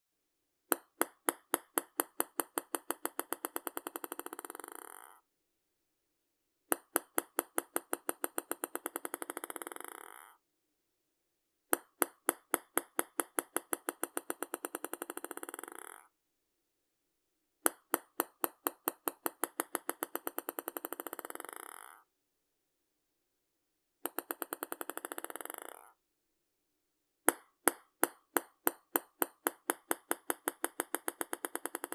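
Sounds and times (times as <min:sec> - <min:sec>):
ping pong ball bouncing: 0:00.7 - 0:05.2, 0:06.7 - 0:10.4, 0:11.8 - 0:16.1, 0:17.7 - 0:22.0, 0:24.1 - 0:25.9, 0:27.3 - 0:31.9.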